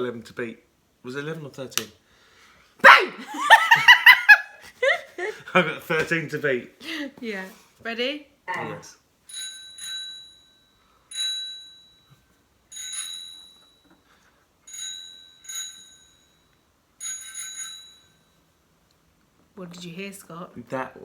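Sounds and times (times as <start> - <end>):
bicycle bell ringing: 9.3 - 12.1, 12.7 - 13.8, 14.7 - 18.4.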